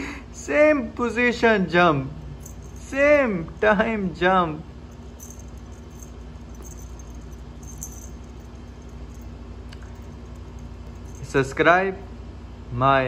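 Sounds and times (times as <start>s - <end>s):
low hum: 1.9s - 12.6s
jingling rattles: 2.3s - 4.0s, 4.8s - 11.7s.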